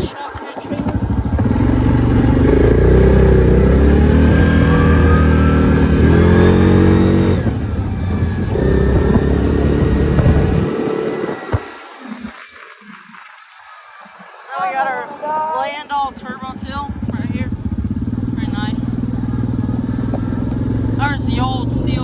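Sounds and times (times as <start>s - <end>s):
vehicle engine accelerating: 0.8s - 12.4s, 16.4s - 22.0s.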